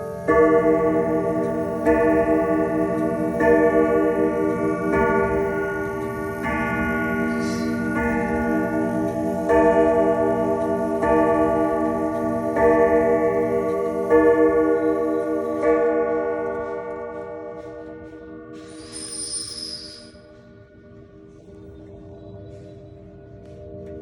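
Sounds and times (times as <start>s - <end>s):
grandfather clock striking: 0.0s - 18.9s.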